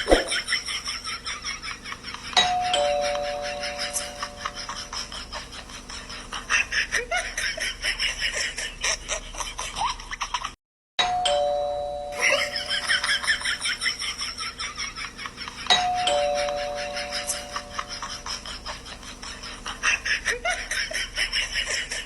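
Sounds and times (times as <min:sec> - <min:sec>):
two-tone doorbell chime: 0:02.4 - 0:04.6, 0:11.0 - 0:13.3, 0:15.7 - 0:18.2.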